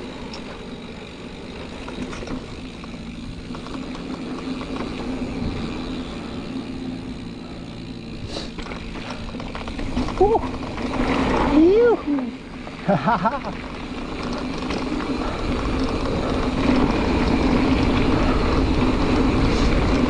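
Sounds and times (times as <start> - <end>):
bike tyre and drivetrain rumble: 0.0 - 20.0
light clicks and rattles: 1.5 - 5.4, 8.5 - 11.1, 13.2 - 17.9
wind noise: 14.1 - 20.0.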